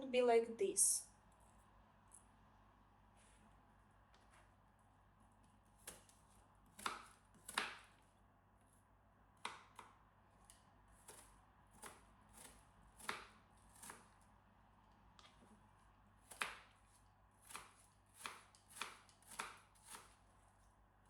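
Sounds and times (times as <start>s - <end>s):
knife chopping apple: 5.2s - 8.1s, 9.3s - 20.8s.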